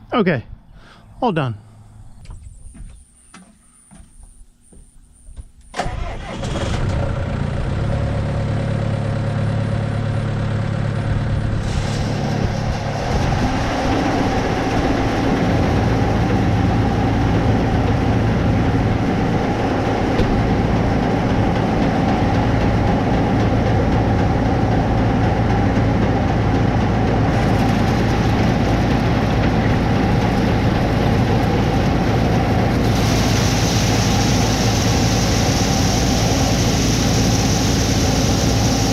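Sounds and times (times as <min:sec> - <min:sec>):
heavy vehicle engine running: 0:05.8 - 0:38.9.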